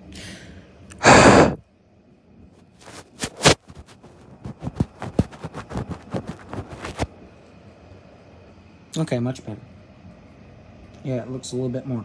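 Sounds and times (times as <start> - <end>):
camera handling rub: 2.8 - 7.1.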